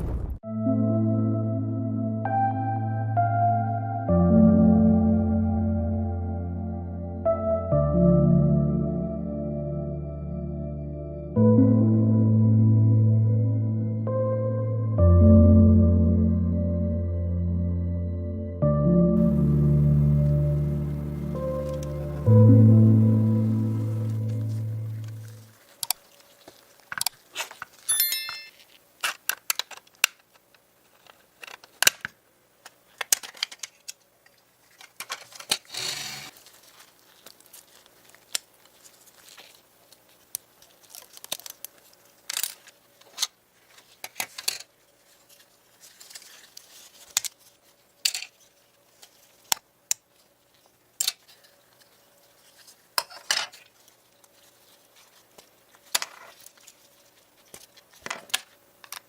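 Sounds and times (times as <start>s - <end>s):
small parts clicking and clattering: 26.7s - 36.1s, 37.2s - 44.8s, 45.8s - 52.0s
brief scraping rasp: 35.7s - 36.3s.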